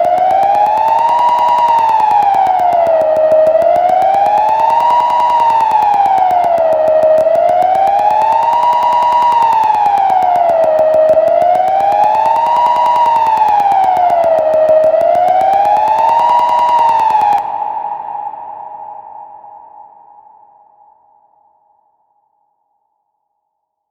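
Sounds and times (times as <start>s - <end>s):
siren wailing: 0.0s - 17.5s.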